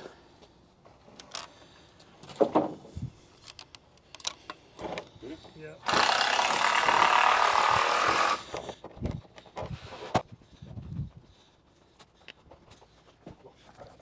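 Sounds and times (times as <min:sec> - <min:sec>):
boards knocking and thudding: 0:02.3 - 0:02.9
power drill driving screw into wood: 0:05.8 - 0:08.7.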